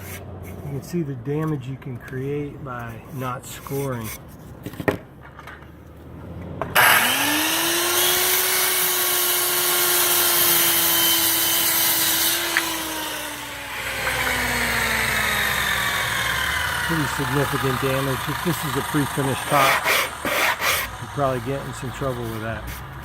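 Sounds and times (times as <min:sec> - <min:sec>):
circular saw running: 0:06.8 - 0:22.8.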